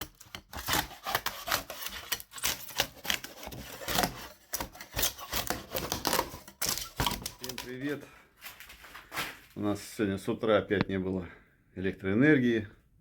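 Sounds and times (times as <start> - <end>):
rubbing and scraping strokes: 0.0 - 9.5.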